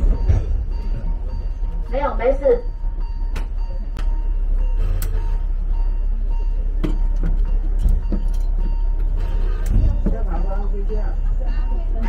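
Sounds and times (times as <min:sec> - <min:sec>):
train carriage rumbling: 0:00.0 - 0:12.0
clunks from couplings: 0:06.8 - 0:10.2.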